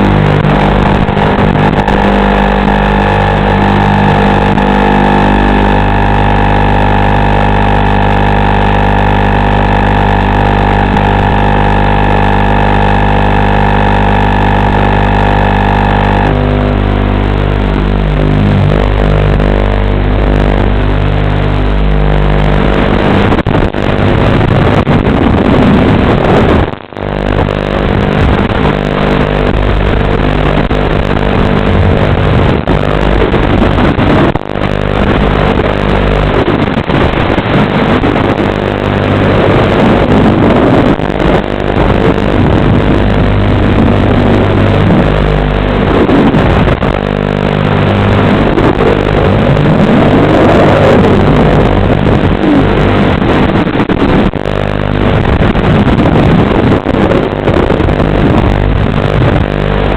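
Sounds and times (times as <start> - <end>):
drone motors buzzing: 0.0 - 25.7, 26.7 - 36.6.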